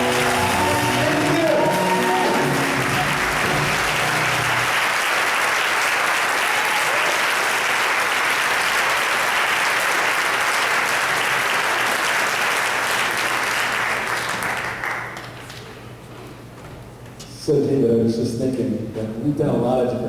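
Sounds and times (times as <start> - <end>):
congregation applauding: 0.0 - 15.7.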